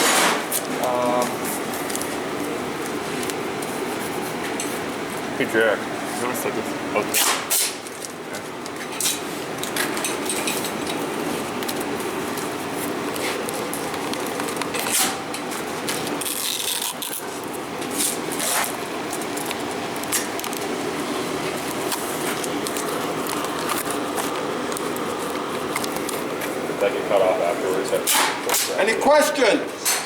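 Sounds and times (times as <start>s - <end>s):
steady background hum: 0.0s - 30.0s
hand tools clinking and knocking: 8.9s - 12.4s.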